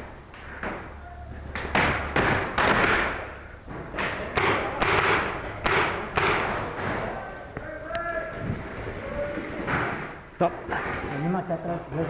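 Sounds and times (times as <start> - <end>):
paintballs striking: 0.3 - 11.5
paintball markers firing: 1.5 - 3.3, 4.0 - 7.0.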